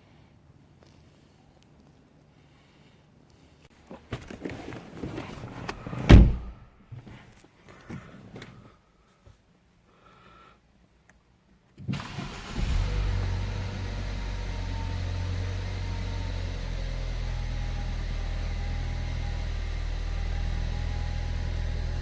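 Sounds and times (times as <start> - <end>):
car engine starting and idling: 11.8 - 22.0.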